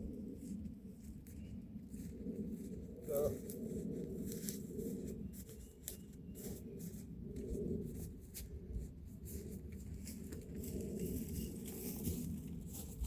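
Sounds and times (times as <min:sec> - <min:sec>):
soft rustling and scuffing: 0:07.9 - 0:13.0.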